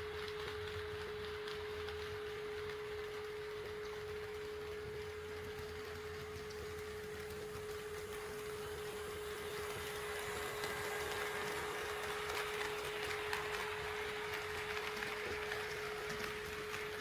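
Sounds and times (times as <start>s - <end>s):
steady hum: 1.7s - 17.0s
model train wheels rattling: 4.8s - 17.0s.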